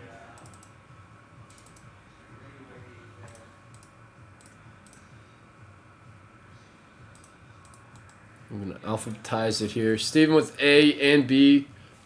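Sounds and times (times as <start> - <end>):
faint computer clicks: 0.4 - 0.8, 1.4 - 1.9, 3.2 - 5.1, 7.1 - 8.2.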